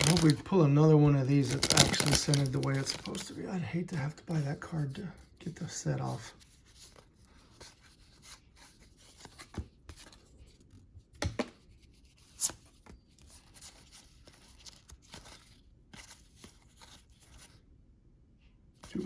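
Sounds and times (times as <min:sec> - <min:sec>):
cards rustling and sliding: 0:00.0 - 0:00.5, 0:01.1 - 0:03.3, 0:13.4 - 0:17.6.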